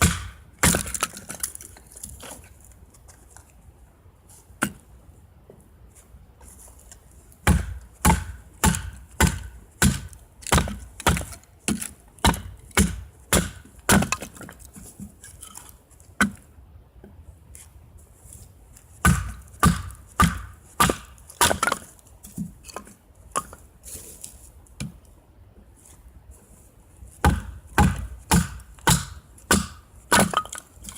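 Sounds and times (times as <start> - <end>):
axe chopping firewood: 0.0 - 1.6, 7.4 - 14.6, 16.2 - 16.4, 19.0 - 23.6, 27.2 - 30.9.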